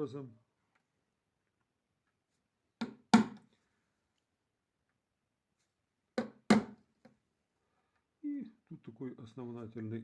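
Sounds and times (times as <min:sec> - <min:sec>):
sharp knocks on wood: 0:02.8 - 0:03.4, 0:06.2 - 0:06.8.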